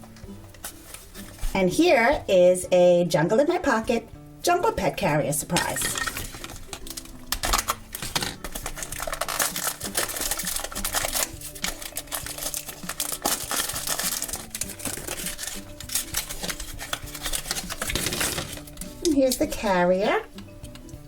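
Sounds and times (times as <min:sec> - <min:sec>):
quiet background music: 0:00.0 - 0:21.0
packaging crinkling and tearing: 0:06.0 - 0:19.1.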